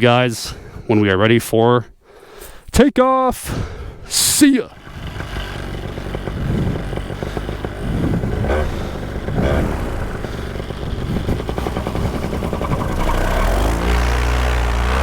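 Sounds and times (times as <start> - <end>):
paramotor engine running: 4.7 - 15.0.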